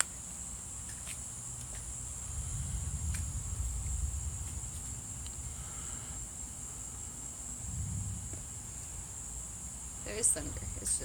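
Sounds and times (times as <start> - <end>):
crickets chirring: 0.0 - 11.0
low rumble: 2.0 - 9.3.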